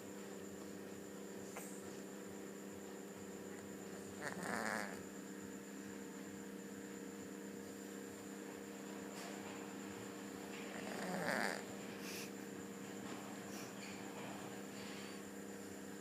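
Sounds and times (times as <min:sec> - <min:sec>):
steady low hum: 0:00.0 - 0:16.0
cat snoring: 0:04.2 - 0:05.0, 0:10.7 - 0:12.2.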